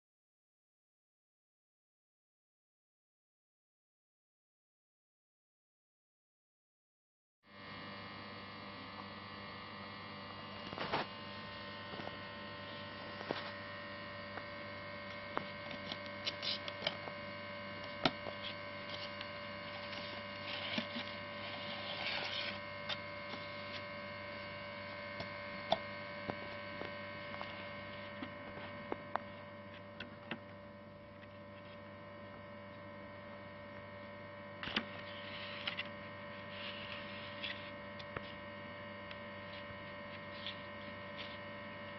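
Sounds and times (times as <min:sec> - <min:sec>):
electrical hum: 0:07.5 - 0:41.9.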